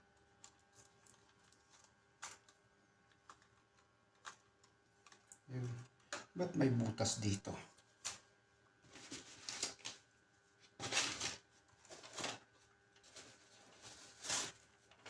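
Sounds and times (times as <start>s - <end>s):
packaging rustles and scrapes: 0.4s - 2.6s, 8.8s - 15.0s.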